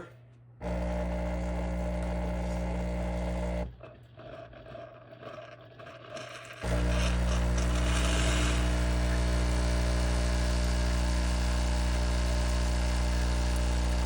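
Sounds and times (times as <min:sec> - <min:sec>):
espresso machine pump buzzing: 0:00.6 - 0:04.0, 0:06.2 - 0:14.0.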